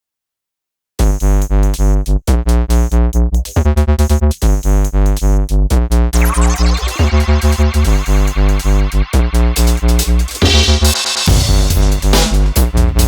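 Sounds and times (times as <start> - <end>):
electronic music with synth bass: 6.1 - 13.0.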